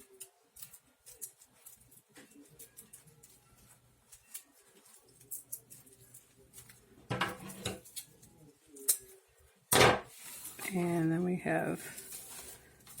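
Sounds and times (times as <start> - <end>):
dried palm strips rustling: 0.0 - 6.9, 10.1 - 13.0.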